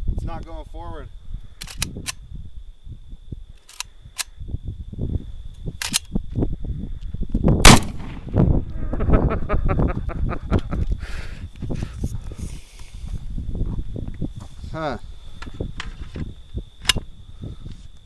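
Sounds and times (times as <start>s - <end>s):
sharp metallic clicks: 1.6s - 2.2s, 5.8s - 6.1s
pistol gunshot: 7.6s - 8.4s.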